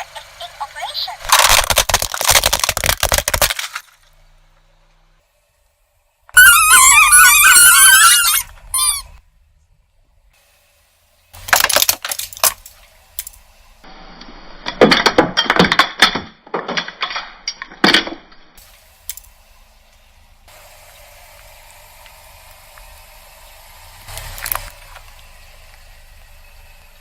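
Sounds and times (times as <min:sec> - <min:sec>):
objects crackling and popping: 0:01.2 - 0:04.1, 0:11.4 - 0:13.5
wavering squeal: 0:06.3 - 0:09.2.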